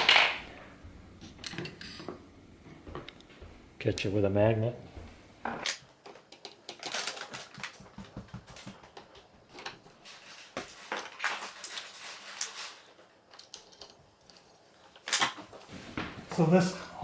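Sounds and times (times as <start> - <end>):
small clicks taps and scrapes: 5.6 - 9.9.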